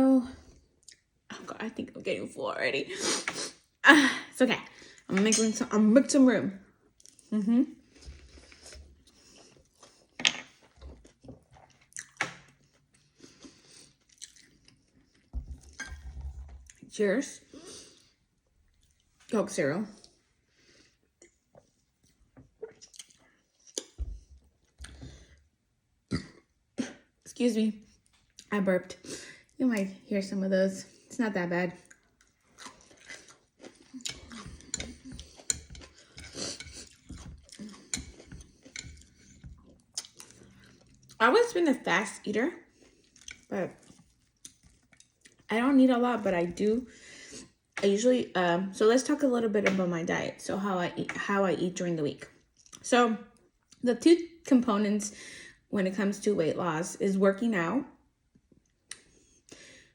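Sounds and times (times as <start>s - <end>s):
person chewing food: 6.8s - 16.8s, 20.0s - 25.5s, 31.8s - 41.2s, 42.7s - 45.5s, 52.4s - 52.8s.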